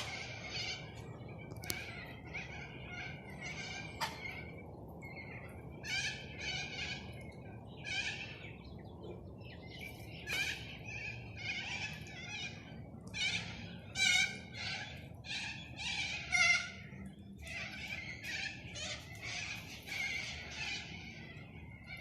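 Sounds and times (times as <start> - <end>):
parrots squawking: 10.3 - 22.0.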